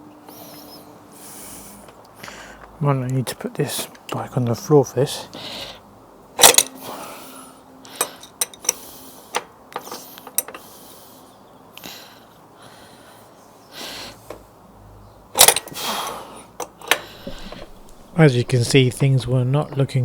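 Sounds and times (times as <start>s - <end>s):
metallic clinks and knocks: 8.0s - 8.8s.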